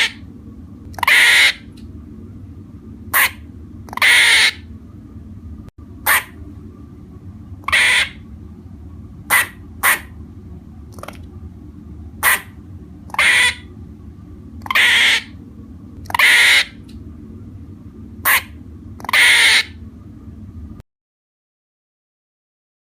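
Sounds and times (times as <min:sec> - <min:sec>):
squirrel raspy calls: 0:00.0 - 0:00.2, 0:01.0 - 0:01.7, 0:03.1 - 0:04.6, 0:06.0 - 0:06.4, 0:07.6 - 0:08.2, 0:09.3 - 0:10.1, 0:12.2 - 0:13.7, 0:14.6 - 0:15.4, 0:16.1 - 0:16.8, 0:18.2 - 0:19.8
steady low hum: 0:00.0 - 0:20.8.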